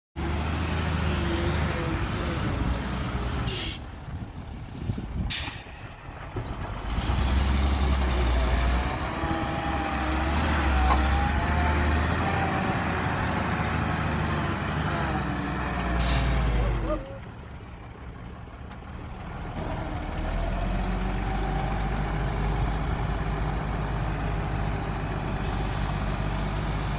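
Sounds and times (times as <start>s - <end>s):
diesel machinery engine drone: 0.2s - 26.9s
short hisses: 3.5s - 3.8s.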